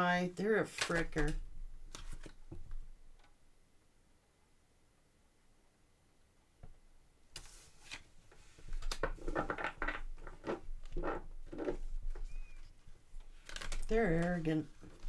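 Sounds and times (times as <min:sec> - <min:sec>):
cards shuffling and flicking: 0:00.7 - 0:02.4, 0:07.4 - 0:08.1, 0:13.3 - 0:15.0.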